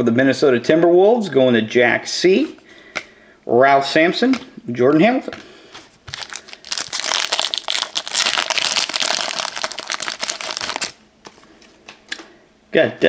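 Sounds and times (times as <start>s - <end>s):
card pack wrapper crinkling: 6.0s - 11.0s.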